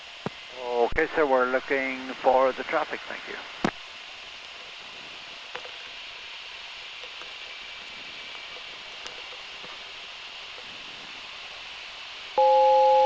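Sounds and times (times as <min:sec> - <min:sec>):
radio intercom hiss: 0:00.5 - 0:03.7.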